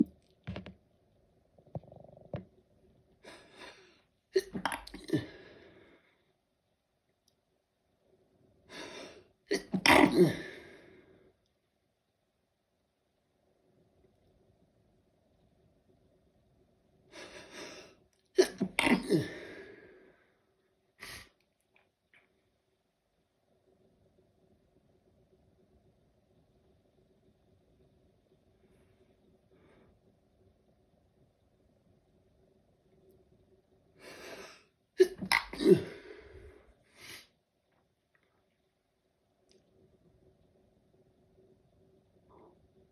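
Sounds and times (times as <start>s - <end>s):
person sneezing: 4.4s - 5.4s, 8.8s - 10.7s, 18.4s - 19.6s, 34.2s - 36.2s.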